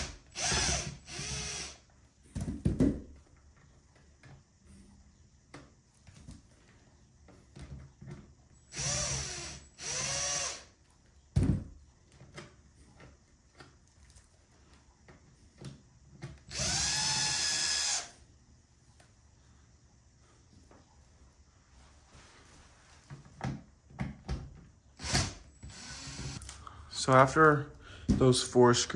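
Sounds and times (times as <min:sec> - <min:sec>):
power drill whining: 0:00.0 - 0:01.8, 0:08.7 - 0:10.7, 0:16.5 - 0:18.1, 0:25.0 - 0:26.5.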